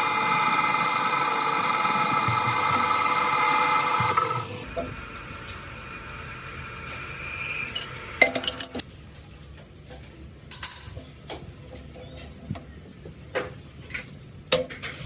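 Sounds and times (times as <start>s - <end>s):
metal tools clinking: 7.7s - 8.8s, 10.5s - 11.1s.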